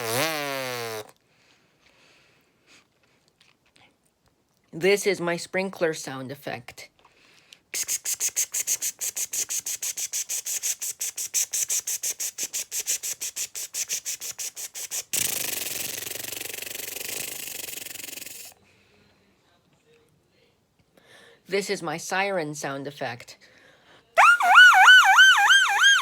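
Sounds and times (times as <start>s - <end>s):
person imitating a sprinkler: 7.8s - 18.6s, 24.2s - 26.0s.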